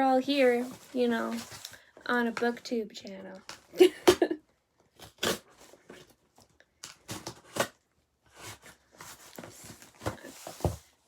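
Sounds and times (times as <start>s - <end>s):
cardboard tearing and scraping: 5.0s - 6.1s, 6.8s - 10.8s.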